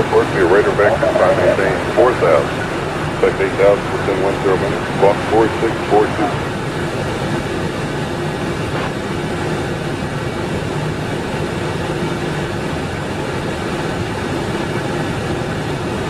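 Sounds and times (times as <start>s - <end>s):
low even hum: 0.0s - 9.0s
airplane in flight drone: 0.0s - 16.0s.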